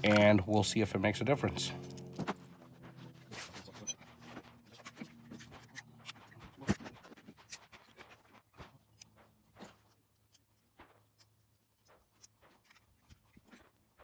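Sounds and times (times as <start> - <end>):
pistol parts clicking: 1.8 - 2.3.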